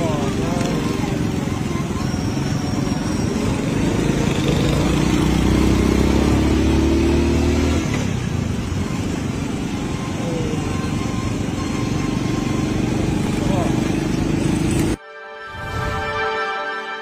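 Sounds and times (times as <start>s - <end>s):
engine humming: 0.0s - 15.0s.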